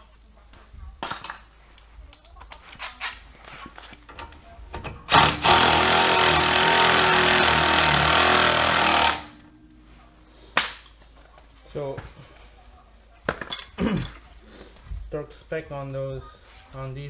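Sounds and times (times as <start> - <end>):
power tool whirring: 5.1 - 9.5.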